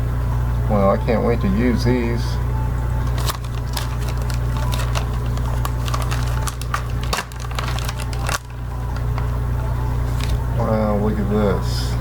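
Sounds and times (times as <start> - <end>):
low electrical hum: 0.0 - 12.0
plastic packaging crinkling: 3.0 - 9.4, 10.1 - 10.4.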